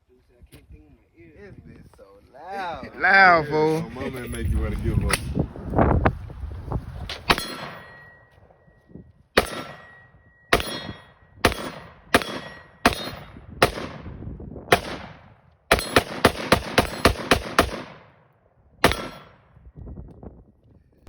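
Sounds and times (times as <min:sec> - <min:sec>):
pistol gunshots echoing: 0:07.3 - 0:08.2, 0:09.4 - 0:19.4.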